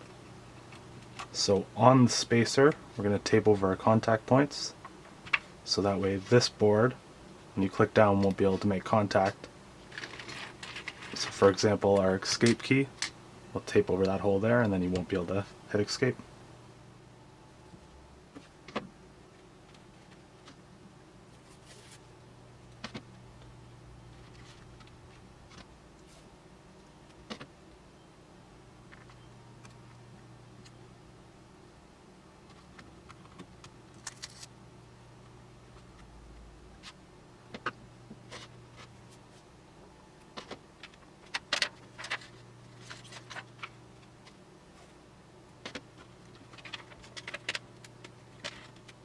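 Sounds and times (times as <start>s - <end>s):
steady low hum: 0.0s - 49.0s
plastic sheets handling noises: 7.6s - 15.1s, 21.3s - 22.0s, 32.4s - 34.5s, 40.2s - 49.0s
tape and plastic sheets rustling: 8.0s - 13.2s, 21.4s - 22.0s, 32.5s - 34.5s.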